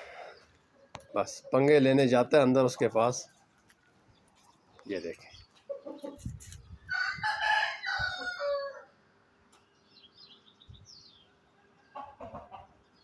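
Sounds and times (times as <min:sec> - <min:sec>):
rooster crowing: 0:06.9 - 0:09.0
faint high bird chirps: 0:09.5 - 0:13.0.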